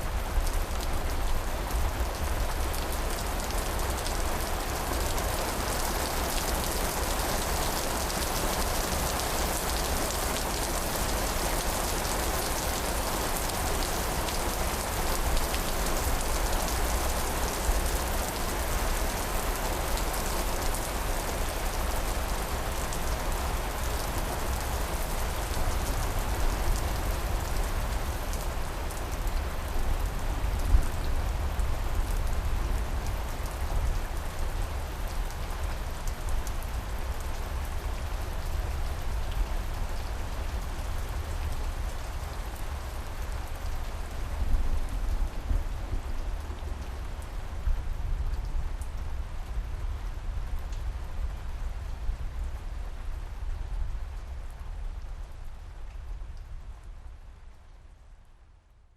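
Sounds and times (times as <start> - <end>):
heavy rain hissing and pattering: 0.0 - 57.9.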